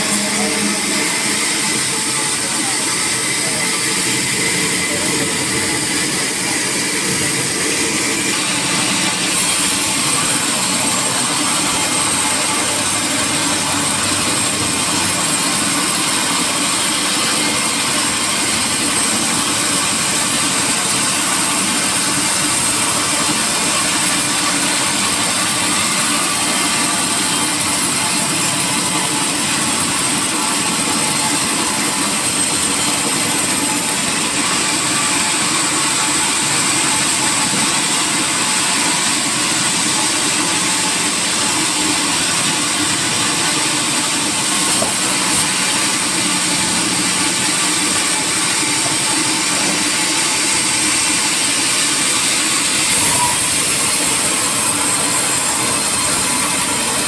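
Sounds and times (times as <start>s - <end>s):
sawmill machinery din: 0.0s - 57.0s
steady high whine: 0.0s - 57.0s.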